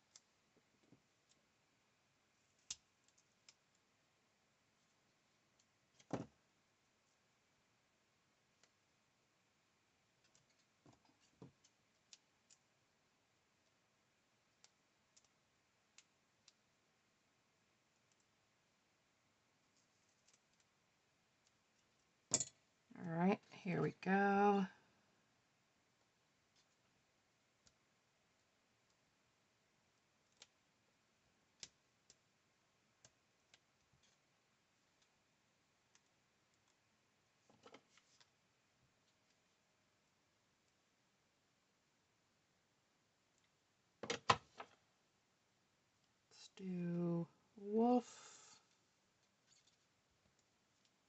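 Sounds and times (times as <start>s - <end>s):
faint clicks and taps: 10.1s - 12.8s, 14.4s - 16.8s, 19.6s - 22.6s, 35.8s - 39.6s, 48.7s - 51.0s.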